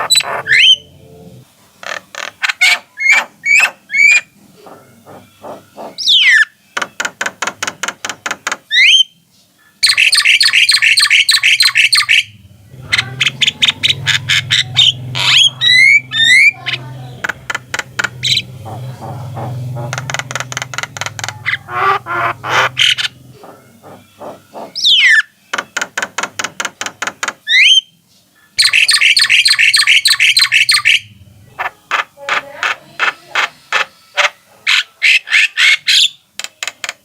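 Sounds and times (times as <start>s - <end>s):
low hum: 0.0s - 1.5s, 12.3s - 24.7s
mynas singing: 12.7s - 24.8s.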